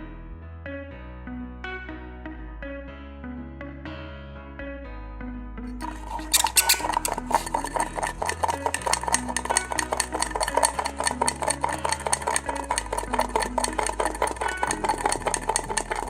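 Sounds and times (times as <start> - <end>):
background music: 0.0 - 16.0
spoon clinking against cup: 5.8 - 16.0.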